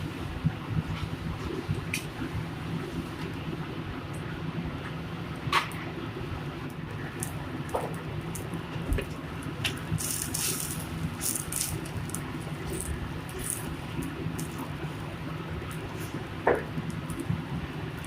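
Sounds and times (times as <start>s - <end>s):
sizzling in a cooking pan: 10.0s - 12.2s.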